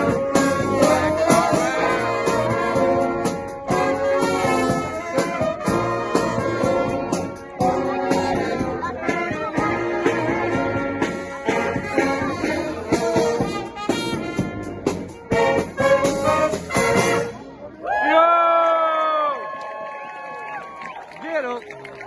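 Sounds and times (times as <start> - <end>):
percussion beat: 0.0 - 17.3
trumpets and trombones: 0.0 - 17.6.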